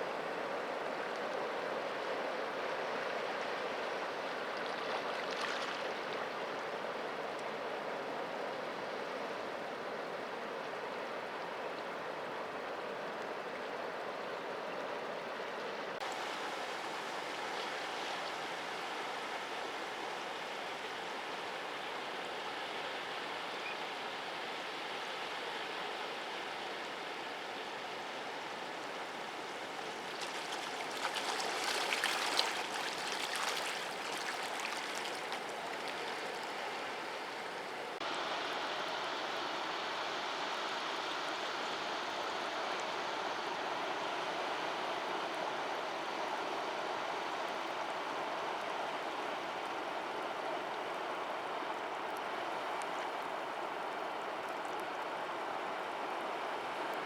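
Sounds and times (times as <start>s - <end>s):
sea waves washing on rocks: 29.8s - 37.6s.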